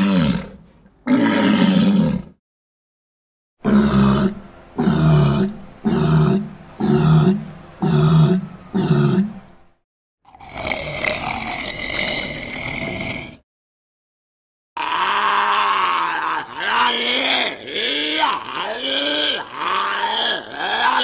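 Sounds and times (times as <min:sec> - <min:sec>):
walrus bellowing: 0:03.6 - 0:09.6, 0:14.8 - 0:21.0.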